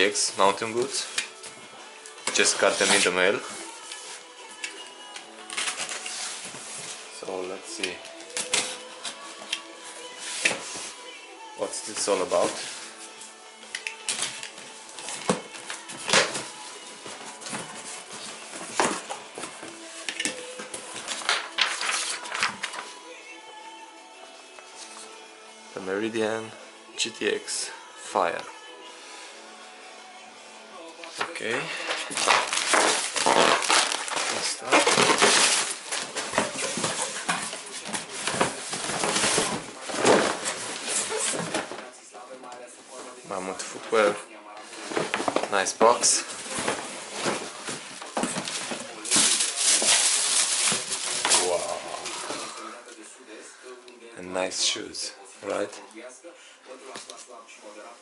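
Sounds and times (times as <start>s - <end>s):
packaging crackling and rustling: 20.4s - 22.9s, 31.2s - 41.9s, 44.7s - 52.6s
knocks of packaging pulled open: 31.9s - 37.2s
cardboard scraping: 31.9s - 41.9s.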